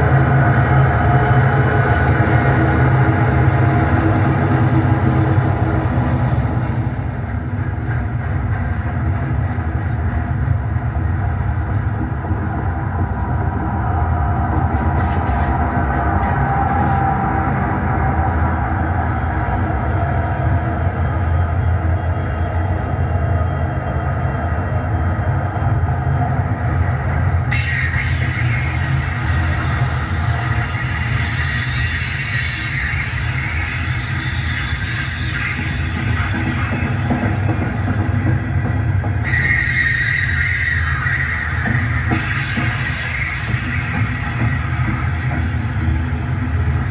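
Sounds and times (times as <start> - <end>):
diesel locomotive engine rumble: 0.0 - 46.9
running train: 0.0 - 46.9
rail hiss: 14.6 - 23.2, 25.9 - 46.9.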